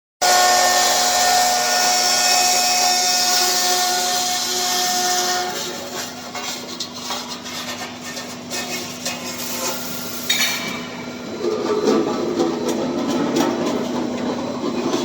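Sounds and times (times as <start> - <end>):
saw grinding through steel: 0.2 - 11.0
steady machine hum: 0.2 - 15.0.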